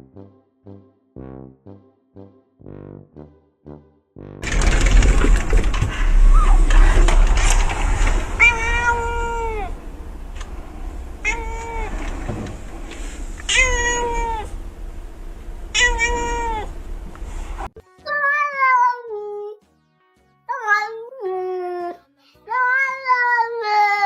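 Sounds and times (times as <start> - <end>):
cat meowing: 6.3 - 10.3, 10.9 - 12.1, 13.4 - 14.8, 15.6 - 16.9.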